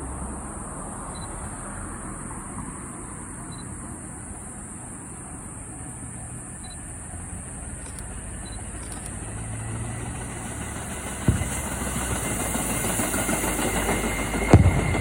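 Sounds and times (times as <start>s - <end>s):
electric train pulling away: 6.9s - 15.0s
deep firework boom: 11.1s - 12.8s, 13.6s - 15.0s.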